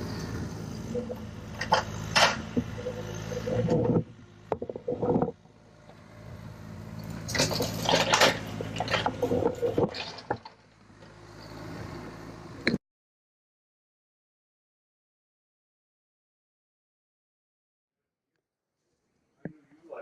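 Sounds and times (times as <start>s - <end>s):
excavator diesel engine running: 0.0s - 12.7s.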